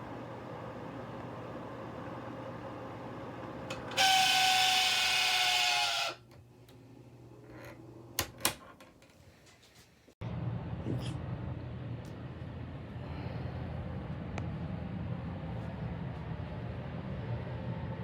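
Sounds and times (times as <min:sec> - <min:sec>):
steady low hum: 0:10.2 - 0:18.0.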